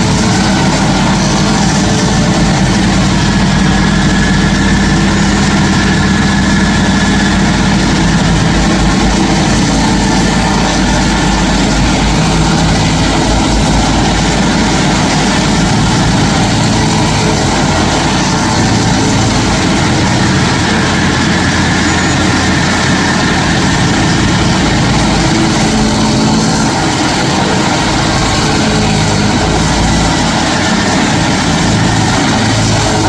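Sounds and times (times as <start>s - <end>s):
stump grinder engine running: 0.0s - 33.0s.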